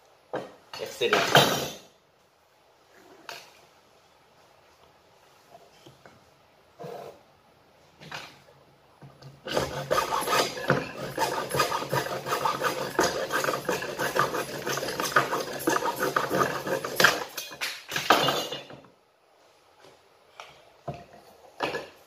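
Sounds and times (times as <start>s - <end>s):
hand saw cutting plastic pipe: 9.4s - 17.4s.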